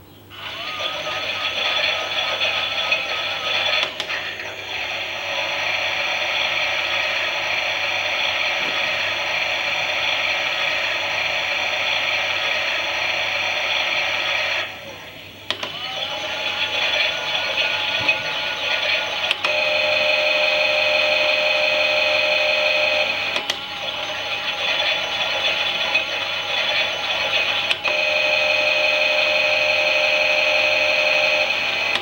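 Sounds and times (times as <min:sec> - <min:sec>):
toy washing machine motor whirring: 0:00.4 - 0:14.9, 0:15.5 - 0:32.0.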